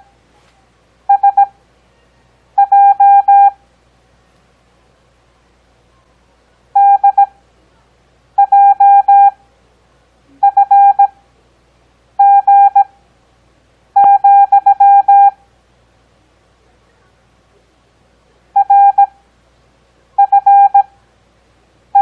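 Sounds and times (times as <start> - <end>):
morse code beeps: 1.1 - 1.6, 2.6 - 3.6, 6.8 - 7.3, 8.4 - 9.4, 10.4 - 11.1, 12.2 - 12.9, 14.0 - 15.4, 18.6 - 19.1, 20.2 - 20.9.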